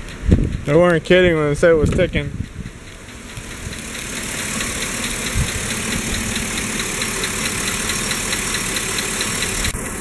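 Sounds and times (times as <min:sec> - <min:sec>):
car engine idling: 0:02.1 - 0:10.0
fast even engine ticking: 0:02.1 - 0:10.0.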